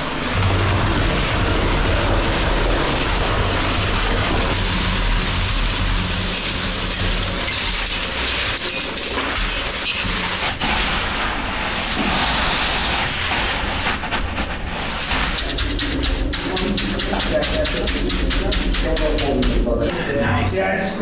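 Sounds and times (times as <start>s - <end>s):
concrete mixer running: 0.0s - 10.5s, 15.2s - 19.9s.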